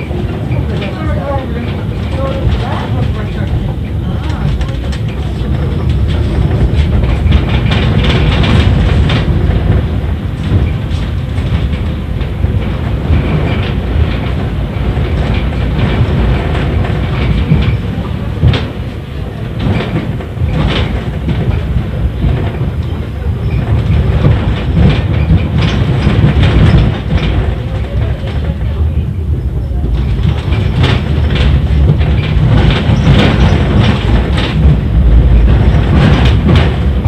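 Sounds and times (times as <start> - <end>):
tram wheels rumbling on rails: 0.0 - 37.0.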